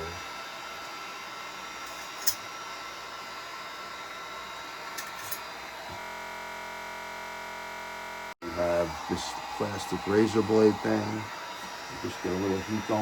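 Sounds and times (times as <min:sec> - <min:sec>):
heat gun blowing: 0:08.4 - 0:13.0.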